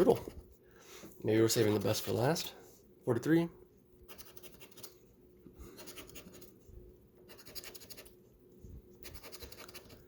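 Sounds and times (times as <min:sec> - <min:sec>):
lottery ticket being scratched: 0:07.3 - 0:08.1.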